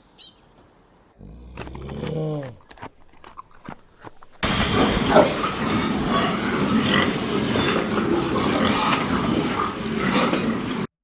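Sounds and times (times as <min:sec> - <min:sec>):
pigs calling: 0:04.4 - 0:10.9.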